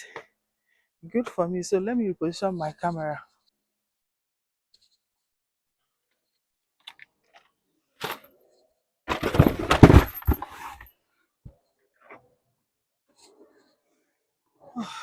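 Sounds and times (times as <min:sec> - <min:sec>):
rubbing and knocking on microphone: 0:09.1 - 0:10.8.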